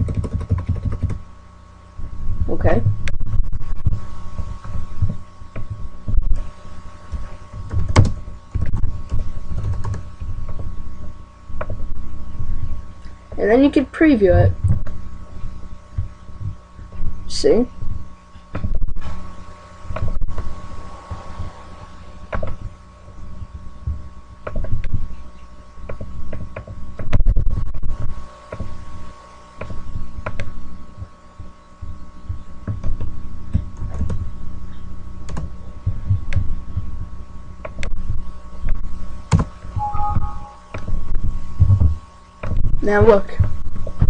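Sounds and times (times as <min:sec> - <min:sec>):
steady electrical hum: 0:00.0 - 0:44.0
two-note tone: 0:39.8 - 0:40.8.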